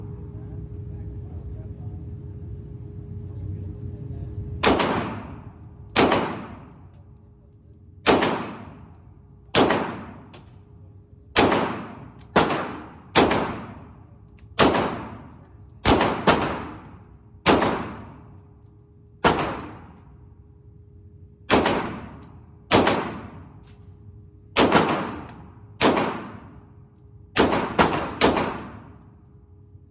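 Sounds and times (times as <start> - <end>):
pistol shots with echo: 4.6 - 6.9, 8.0 - 10.6, 11.4 - 18.4, 19.2 - 20.0, 21.5 - 23.8, 24.6 - 26.7, 27.4 - 29.2.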